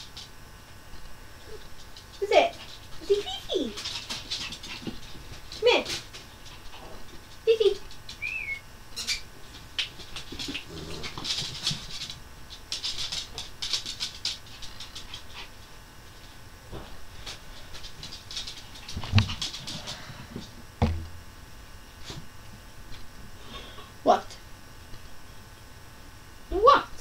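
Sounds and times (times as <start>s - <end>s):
dog claws pattering: 1.6s - 8.4s, 9.5s - 15.7s, 17.2s - 20.1s
low thumps: 20.8s - 21.3s.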